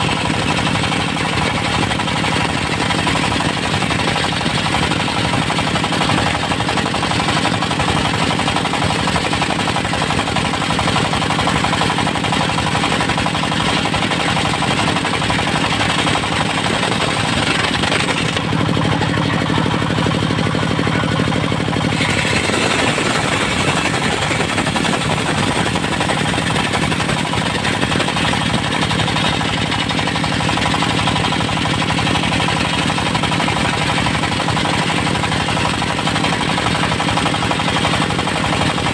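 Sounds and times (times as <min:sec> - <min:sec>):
circular sawmill running: 0:00.0 - 0:38.9.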